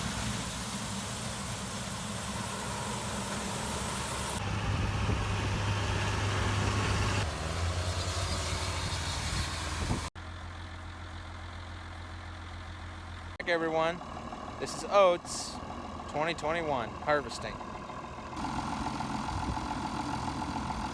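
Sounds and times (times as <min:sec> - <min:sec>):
harvest machinery engines running: 0:00.0 - 0:20.9
quiet steady engine hum: 0:08.8 - 0:20.9.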